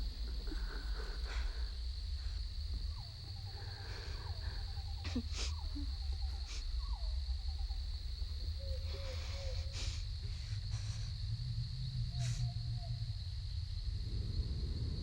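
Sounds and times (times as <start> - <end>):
crickets droning: 0.0 - 15.0
low rumble: 0.0 - 15.0
small animal call: 3.0 - 11.1.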